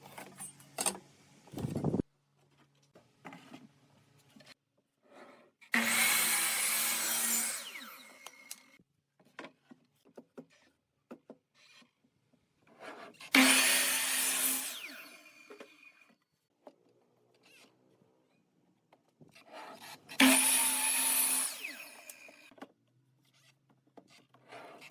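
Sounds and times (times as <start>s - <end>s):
power saw cutting wood: 5.7s - 8.8s, 13.2s - 16.0s, 19.7s - 22.5s.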